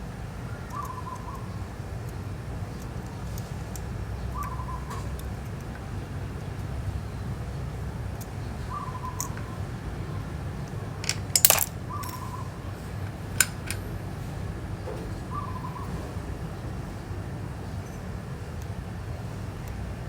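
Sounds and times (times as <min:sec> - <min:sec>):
hand tools clicking and tapping: 0:10.7 - 0:12.3, 0:13.0 - 0:13.9.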